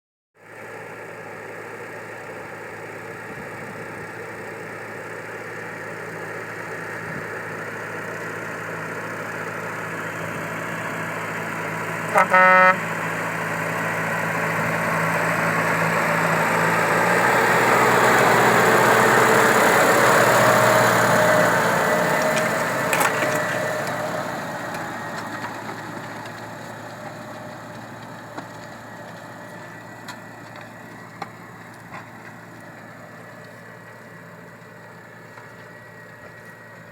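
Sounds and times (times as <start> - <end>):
tractor engine pulling a plough: 0.4 - 36.9
tractor horn toot: 12.0 - 13.0.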